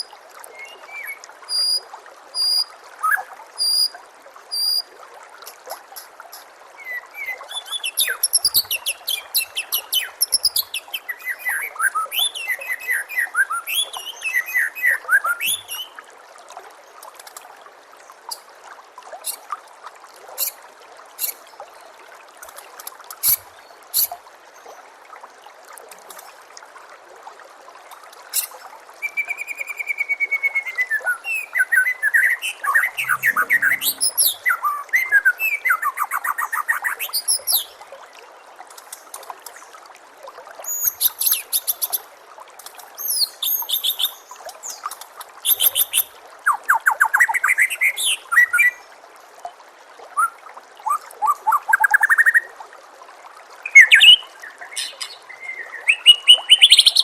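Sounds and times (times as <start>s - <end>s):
running water trickling: 0.0s - 57.0s
bird singing whistled phrases: 29.0s - 35.9s.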